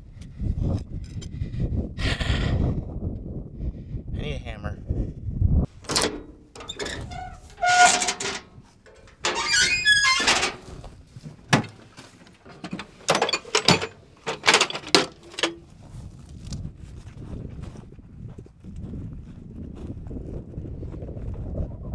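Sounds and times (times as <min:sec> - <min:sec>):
metal squeals and scrapes: 0:06.0 - 0:10.7.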